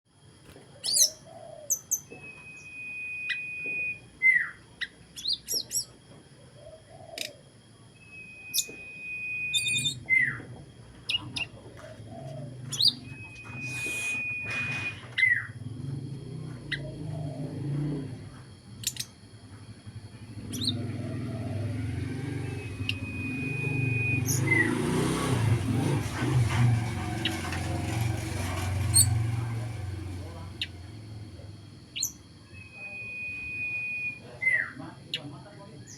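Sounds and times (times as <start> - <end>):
bird chirps: 0.7 - 6.0, 6.6 - 15.6, 16.2 - 25.7, 27.2 - 27.5, 28.6 - 35.9
songbird whistling: 0.8 - 5.9, 8.0 - 10.5, 11.1 - 15.6, 20.4 - 25.1, 31.9 - 35.3.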